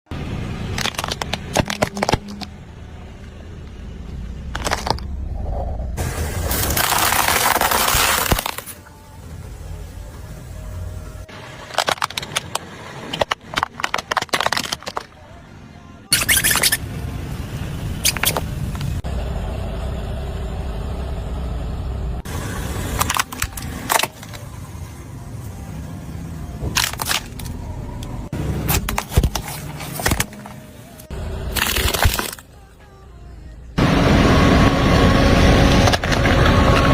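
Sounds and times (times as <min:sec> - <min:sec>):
car engine rumbling: 0:00.1 - 0:36.9
toys cracking and crunching: 0:00.7 - 0:02.6, 0:04.5 - 0:05.3, 0:06.4 - 0:08.9, 0:11.6 - 0:15.2, 0:16.1 - 0:16.8, 0:23.0 - 0:24.4, 0:26.6 - 0:28.1, 0:28.7 - 0:32.6
plastic cracking and snapping: 0:00.8 - 0:02.5, 0:11.7 - 0:15.1, 0:31.5 - 0:32.4
loud dense crunching: 0:06.0 - 0:08.8.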